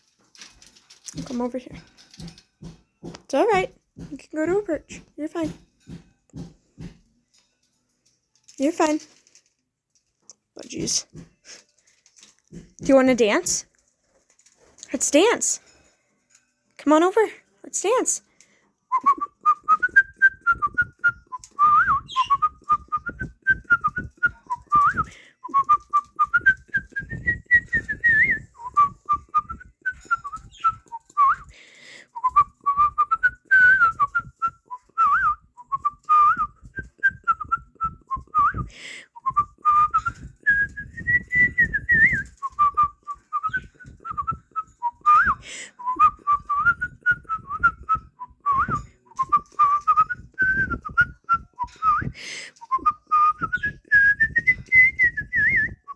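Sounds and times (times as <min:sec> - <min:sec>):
person whistling a tune: 0:18.9 - 0:55.9.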